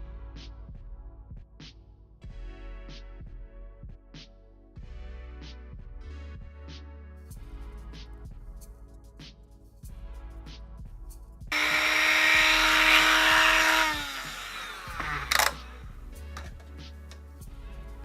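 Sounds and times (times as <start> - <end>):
background music: 0.0 - 18.0
power drill running: 11.5 - 15.8.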